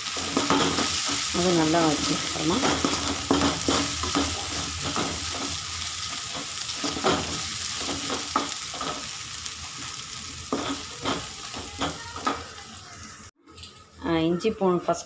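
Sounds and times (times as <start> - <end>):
spoon scraping pan: 0.0 - 9.2, 9.9 - 12.6
food sizzling in oil: 0.0 - 14.5.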